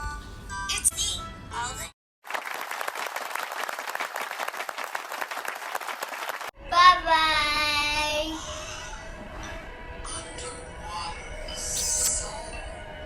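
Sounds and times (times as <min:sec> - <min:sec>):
applause: 0:02.2 - 0:06.6.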